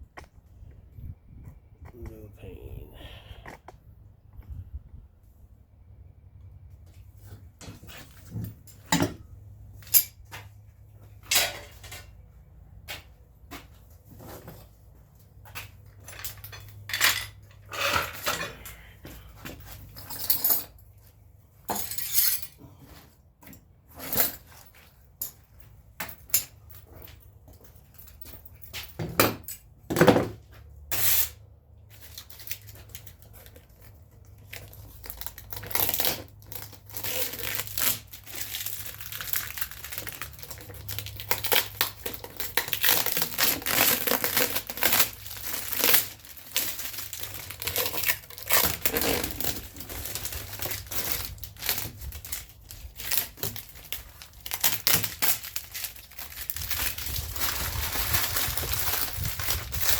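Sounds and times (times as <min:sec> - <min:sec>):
crinkling and tearing by hand: 0:31.9 - 0:59.9.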